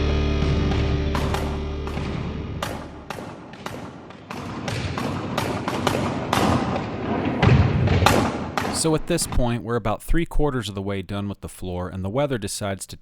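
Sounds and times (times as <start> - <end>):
flooring nailer knocks: 0.7 - 9.4.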